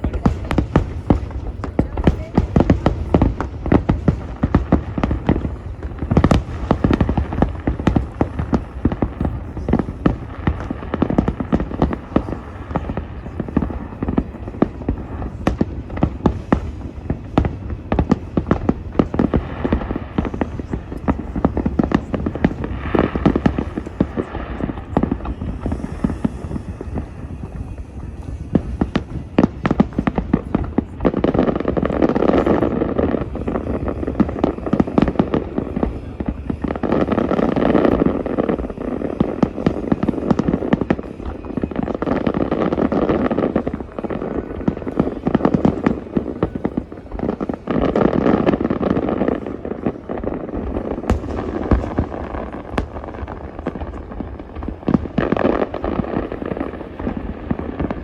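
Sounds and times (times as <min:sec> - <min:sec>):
fireworks bangs and crackles: 0:00.0 - 0:58.0.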